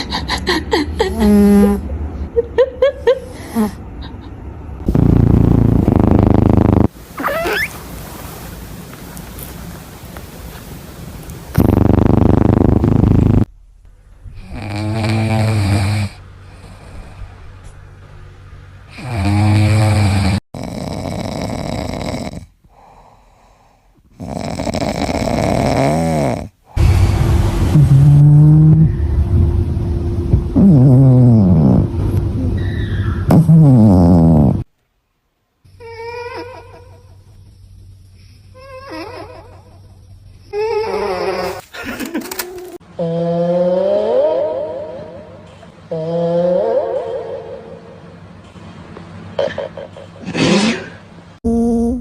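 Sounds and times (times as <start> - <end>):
cat snoring: 4.9 - 6.9, 11.6 - 13.5, 14.4 - 17.1, 18.9 - 23.5, 24.1 - 26.5, 33.3 - 34.6
high wavering squeak: 32.4 - 33.3.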